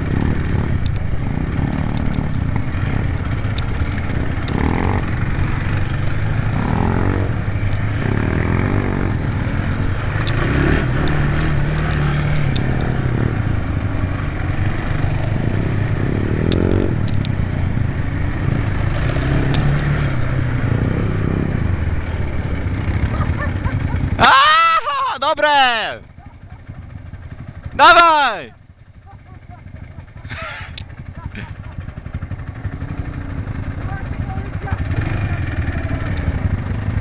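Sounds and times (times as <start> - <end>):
quad bike engine revving: 0.0 - 37.0
sharp clicks and clatter: 0.1 - 6.8, 10.0 - 13.1, 15.0 - 17.4, 18.0 - 20.0.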